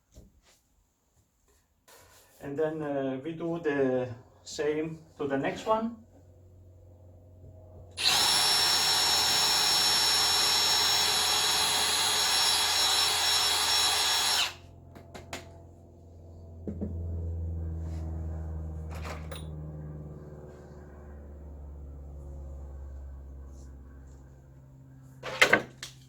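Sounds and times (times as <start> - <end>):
electric drill boring into wall: 8.0 - 14.7
low steady hum: 14.4 - 25.4.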